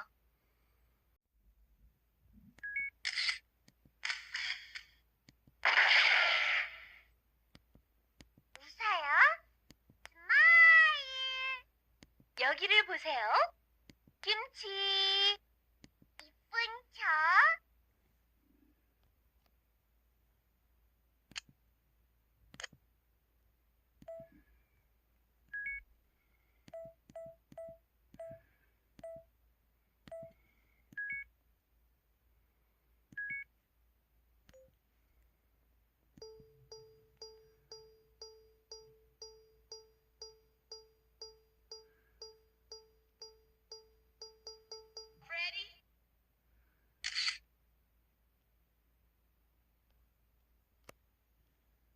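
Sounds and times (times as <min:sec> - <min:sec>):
self-timer countdown beeps: 0:24.0 - 0:24.4, 0:25.5 - 0:25.9, 0:26.7 - 0:29.3, 0:30.1 - 0:30.4, 0:31.0 - 0:31.3, 0:33.2 - 0:33.5, 0:34.5 - 0:34.8, 0:36.2 - 0:45.6
short electronic beeps: 0:29.0 - 0:29.3, 0:36.2 - 0:45.3.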